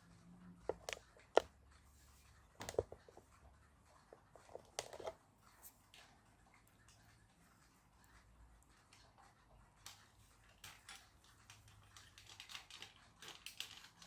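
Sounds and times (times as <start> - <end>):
plastic parts clicking and knocking: 0.7 - 1.5, 2.6 - 3.0, 9.8 - 14.0.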